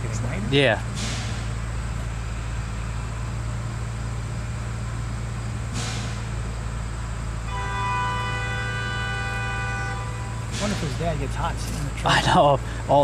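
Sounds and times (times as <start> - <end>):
engine idling: 0.0 - 13.0
short hiss: 1.0 - 1.6, 5.7 - 6.4.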